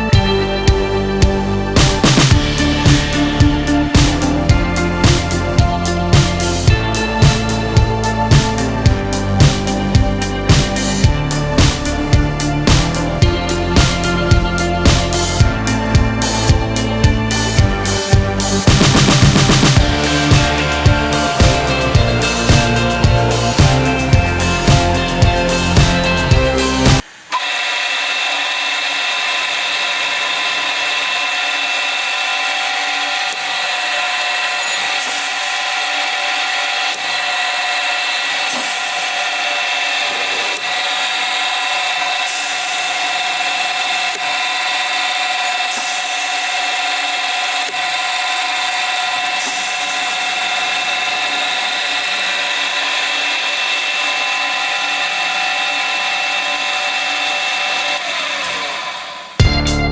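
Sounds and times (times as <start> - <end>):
drill motor whining: 26.7 - 59.4.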